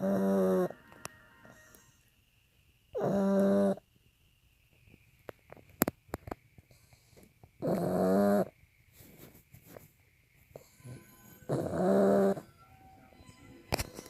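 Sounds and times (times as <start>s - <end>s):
dog snoring: 0.0s - 0.8s, 2.9s - 3.8s, 6.7s - 8.5s, 10.5s - 12.5s.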